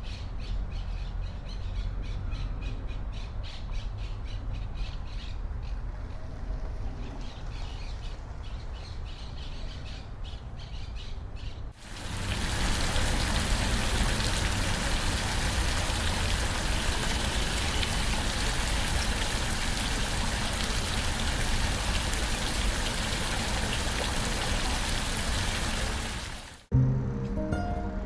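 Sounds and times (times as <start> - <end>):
rain drops ticking: 11.8 - 26.7
steady rain hiss: 11.8 - 26.7.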